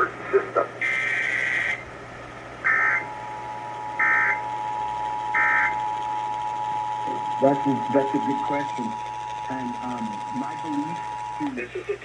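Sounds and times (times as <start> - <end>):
buzzy warbling digital bursts: 2.6 - 3.2, 4.0 - 4.6, 5.3 - 5.9.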